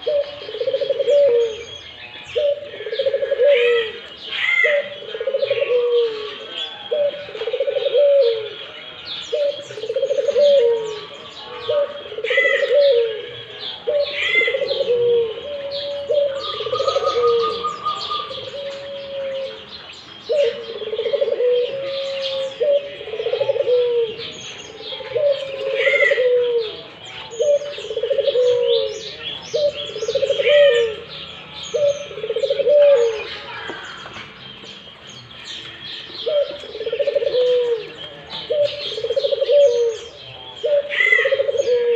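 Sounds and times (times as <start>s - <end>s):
dove cooing: 0.0s - 34.0s, 36.0s - 41.9s
small birds chirping: 0.0s - 41.9s.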